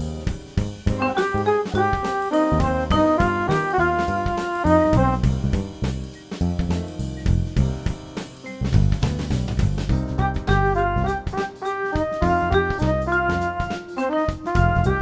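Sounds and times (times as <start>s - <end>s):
bass: 0.0s - 15.0s
drum-kit beat: 0.0s - 15.0s
melody of short pitched notes: 10.2s - 15.0s.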